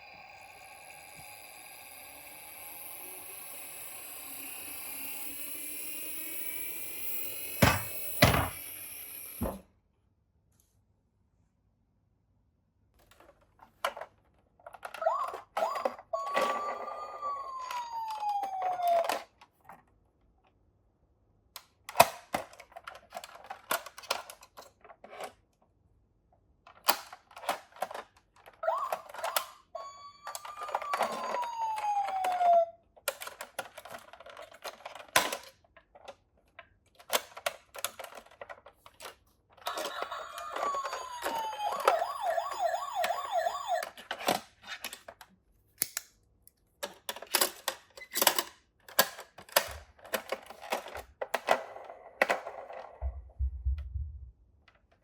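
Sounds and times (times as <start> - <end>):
whistle-like tone sliding down: 0.0 - 9.6, 15.1 - 19.1, 28.7 - 32.7, 39.7 - 43.9
toy cars clattering down slope: 26.8 - 36.2, 37.0 - 45.2.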